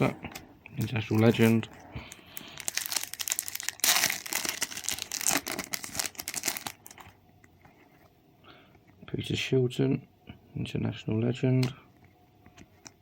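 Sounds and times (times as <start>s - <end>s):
foil wrapper tearing and crinkling: 2.4s - 7.0s.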